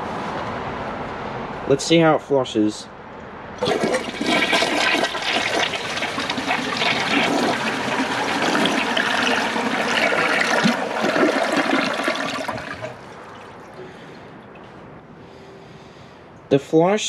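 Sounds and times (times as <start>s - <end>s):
toilet flushing: 3.6s - 14.8s.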